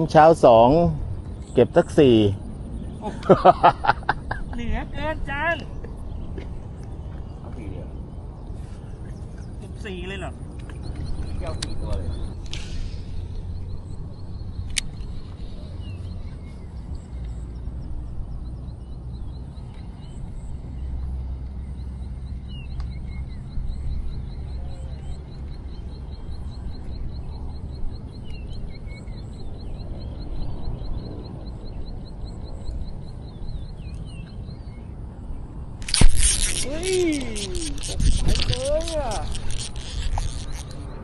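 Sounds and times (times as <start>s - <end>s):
birds chirping: 0.0s - 41.0s
sharp click: 14.6s - 15.1s, 35.8s - 40.8s
wind buffeting microphone: 35.5s - 41.0s
fast even ticking: 35.8s - 40.7s.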